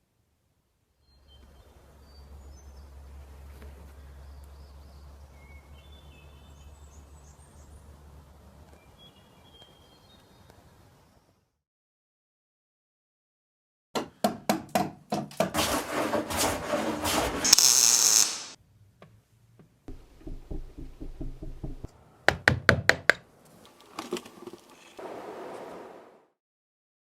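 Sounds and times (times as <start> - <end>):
rush of hiss: 17.4 - 18.6
sharp knocks: 19.9 - 23.2.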